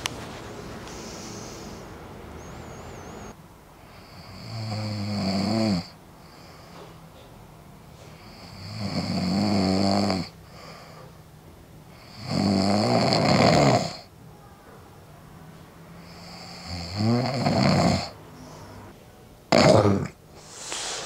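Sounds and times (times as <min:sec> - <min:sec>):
man snoring loudly: 0:04.0 - 0:06.0, 0:08.3 - 0:10.3, 0:12.0 - 0:14.1, 0:16.0 - 0:18.2, 0:19.5 - 0:20.2.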